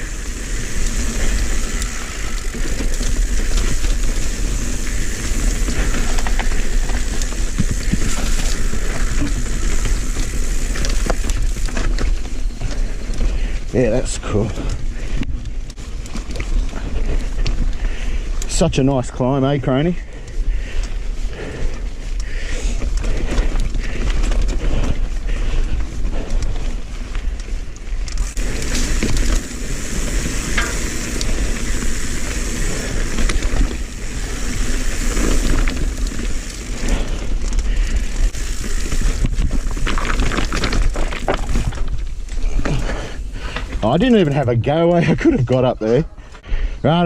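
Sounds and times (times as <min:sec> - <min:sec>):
steady high hiss: 0:00.0 - 0:11.8, 0:28.3 - 0:37.0
bike tyres rolling on dirt: 0:00.0 - 0:47.0.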